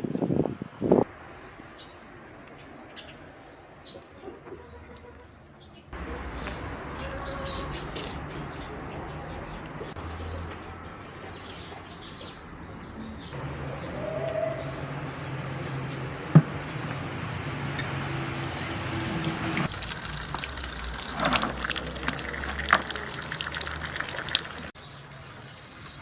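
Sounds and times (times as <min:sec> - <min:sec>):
birds chirping: 0:00.8 - 0:26.0.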